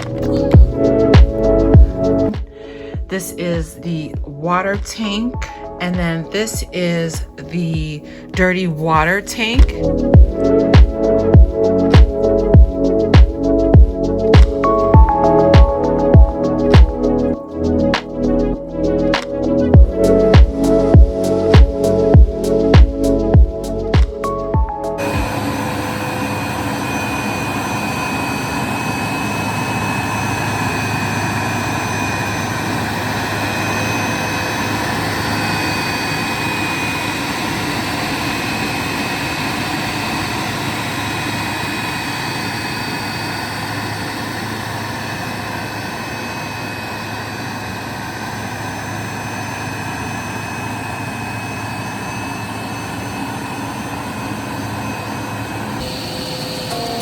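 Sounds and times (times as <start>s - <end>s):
carpet cleaner motor whine: 25.0s - 57.0s.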